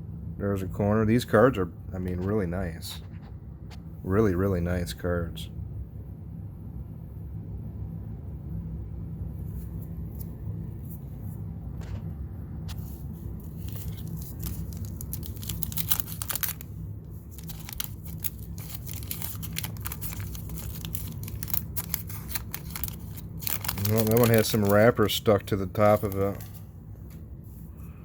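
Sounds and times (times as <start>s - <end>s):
steady low hum: 0.0s - 28.0s
paper wrapper tearing and crinkling: 13.4s - 26.5s.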